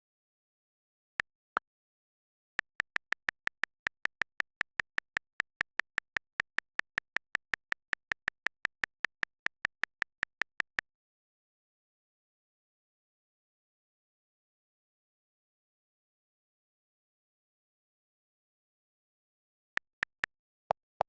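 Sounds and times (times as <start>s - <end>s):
keyboard clicks: 2.6s - 10.8s, 19.8s - 21.0s.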